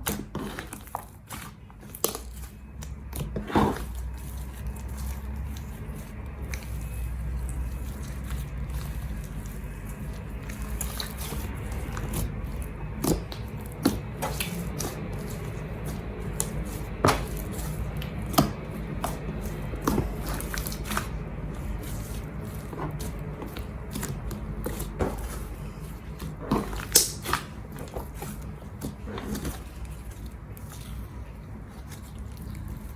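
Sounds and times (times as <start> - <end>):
slime squishing: 0.0 - 32.9
steady low hum: 0.0 - 32.9.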